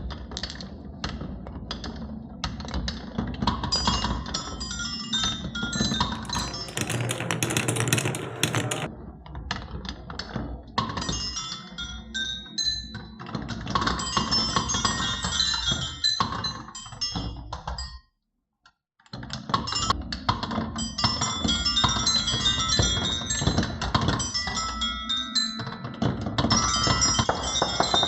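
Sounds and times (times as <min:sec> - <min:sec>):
marbles rolling on wooden tracks: 0:05.7 - 0:08.9, 0:26.5 - 0:28.0.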